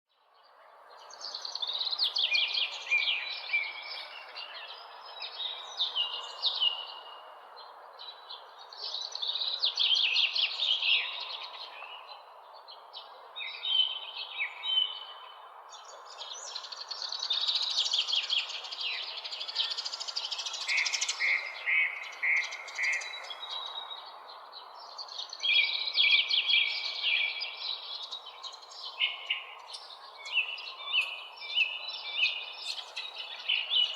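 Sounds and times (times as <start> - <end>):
songbirds chirping and singing: 0.1 - 33.9.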